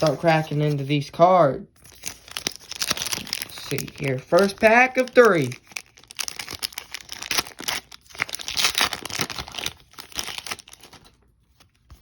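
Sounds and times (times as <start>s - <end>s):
plastic wrapper tearing and crinkling: 1.8s - 11.2s.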